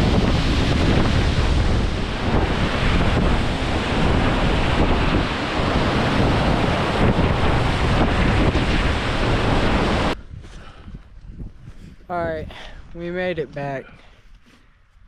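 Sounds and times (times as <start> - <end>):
waterfall roaring: 0.0 - 10.2
wind buffeting microphone: 0.0 - 13.9.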